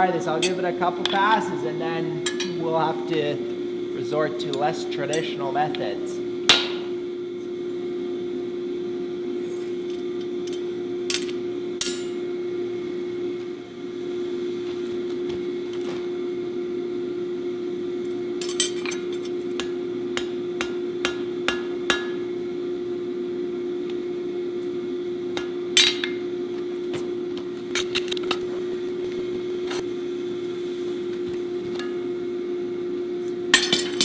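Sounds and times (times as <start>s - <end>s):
steady hum: 0.0s - 34.0s
hammer striking steel on anvil: 0.4s - 1.5s, 2.2s - 2.7s, 6.5s - 7.0s, 11.1s - 12.3s, 18.4s - 22.4s, 25.3s - 26.3s, 33.5s - 34.0s.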